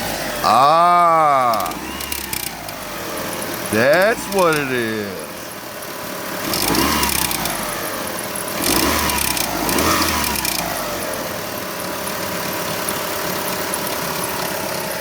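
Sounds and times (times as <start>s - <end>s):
engine clicking and popping: 1.6s - 4.3s, 5.4s - 14.8s.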